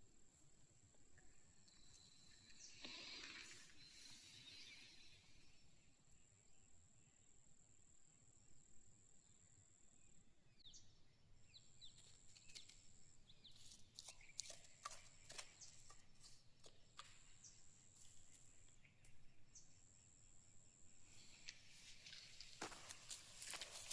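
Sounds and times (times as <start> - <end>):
light clicks and chirps: 11.8 - 19.4.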